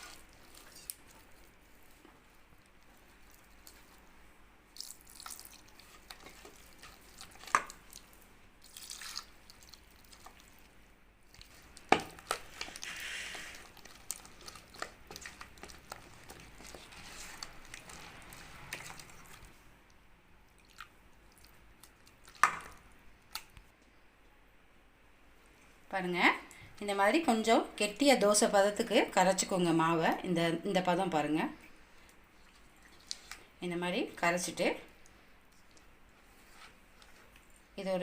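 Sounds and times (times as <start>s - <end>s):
batter squishing and dripping: 0.0s - 23.8s, 31.9s - 33.6s, 34.9s - 37.8s.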